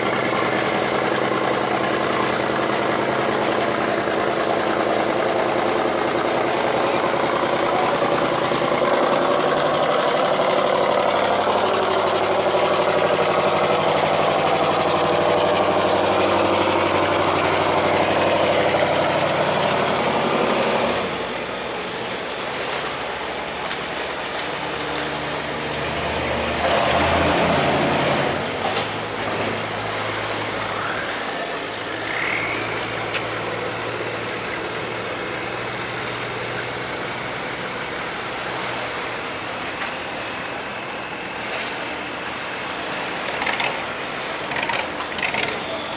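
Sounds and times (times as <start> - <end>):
tugboat engine running: 0.0 - 45.9.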